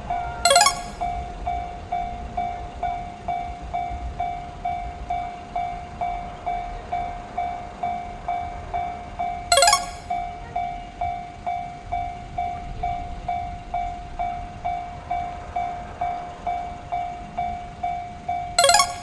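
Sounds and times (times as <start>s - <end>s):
level-crossing bell dinging: 0.5s - 1.1s, 9.5s - 10.2s, 18.6s - 19.0s.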